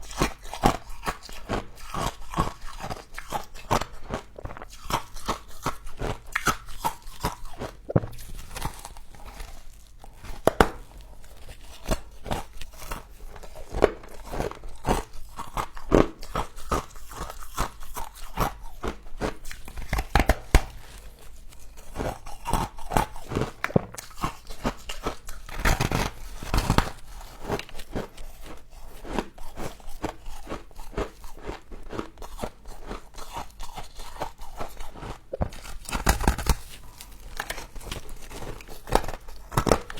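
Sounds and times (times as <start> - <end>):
person crunching and chewing frost: 0.0 - 39.9.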